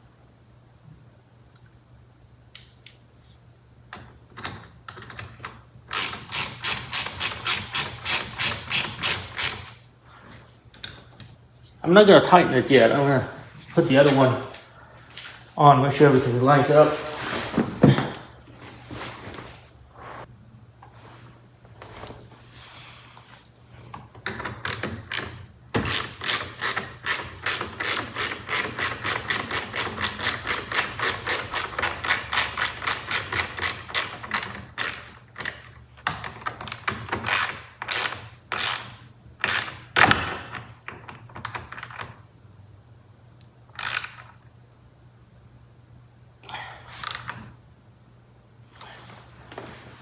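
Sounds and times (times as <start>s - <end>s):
ratchet wrench clicking: 5.9s - 9.8s, 24.7s - 35.7s, 36.7s - 39.9s, 43.7s - 44.4s
handling noises: 10.1s - 24.1s.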